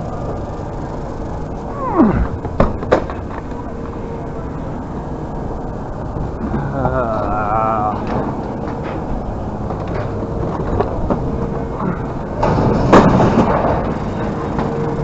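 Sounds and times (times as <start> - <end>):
scrapyard machinery din: 0.0 - 15.0
crash of scrap metal: 12.4 - 14.7.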